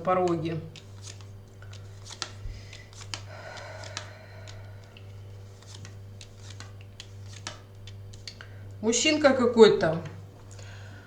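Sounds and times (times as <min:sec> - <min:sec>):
cards clicking on a table: 0:00.0 - 0:08.5
low electrical hum: 0:00.0 - 0:11.0
cards sliding rustle: 0:00.3 - 0:08.5.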